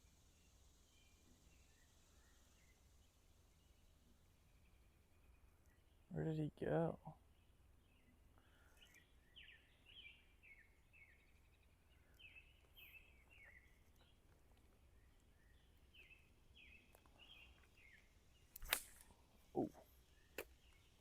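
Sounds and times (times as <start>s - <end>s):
faint bird song: 0.0s - 21.0s
sharp click: 18.5s - 19.1s.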